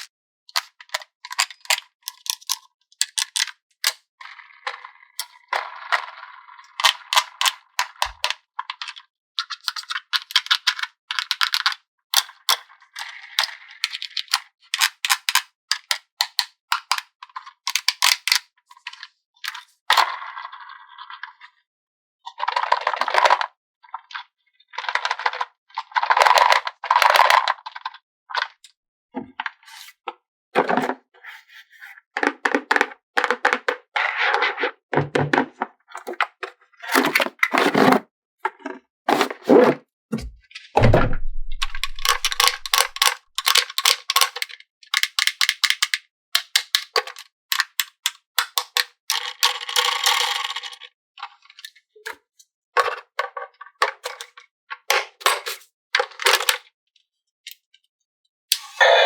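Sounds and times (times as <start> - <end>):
plastic clicks and clacks: 0.0 - 4.1, 6.8 - 20.1, 32.2 - 33.9, 35.0 - 39.4, 41.1 - 52.2, 52.8 - 56.7.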